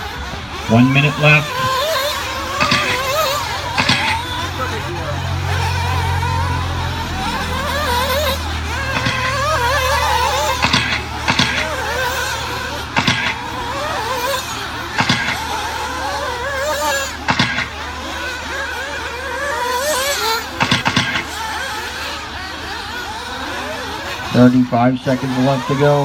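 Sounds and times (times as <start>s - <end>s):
short sharp bursts: 0.0s - 6.2s, 7.0s - 18.8s, 19.8s - 21.6s
rc buggy engines revving: 0.0s - 26.0s.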